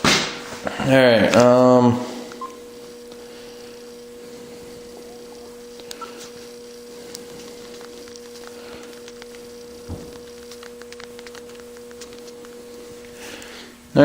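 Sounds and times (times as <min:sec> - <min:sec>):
steady low hum: 0:00.0 - 0:14.0
faint ticks: 0:05.7 - 0:12.6.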